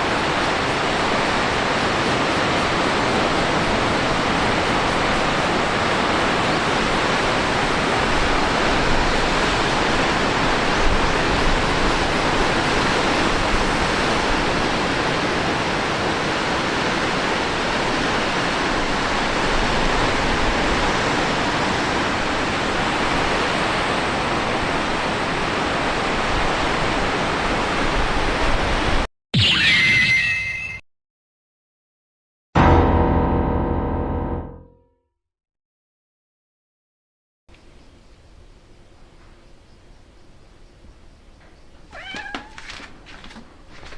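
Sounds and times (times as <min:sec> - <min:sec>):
wind: 0:00.0 - 0:30.8, 0:37.5 - 0:43.9
whistling sound effect: 0:29.4 - 0:30.8.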